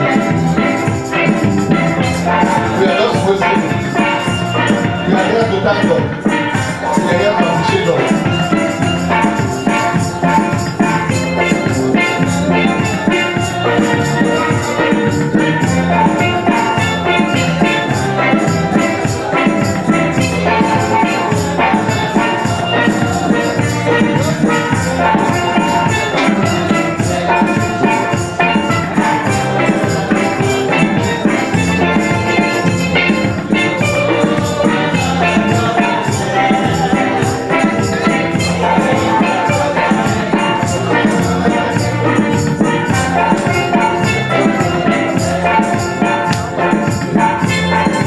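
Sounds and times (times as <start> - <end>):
upbeat music with busy percussion: 0.0 - 48.0.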